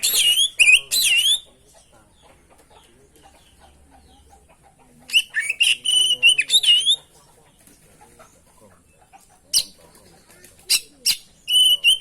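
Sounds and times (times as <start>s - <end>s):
bird singing whistled phrases: 0.0s - 1.5s, 5.1s - 7.0s, 10.7s - 12.0s.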